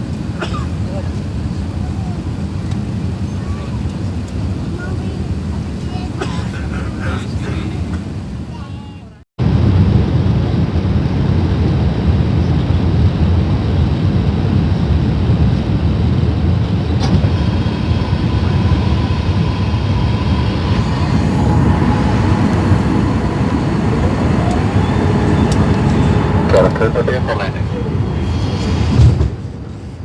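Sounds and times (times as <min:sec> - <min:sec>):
aircraft cabin roar: 0:00.0 - 0:30.0
rising whine: 0:16.9 - 0:29.5.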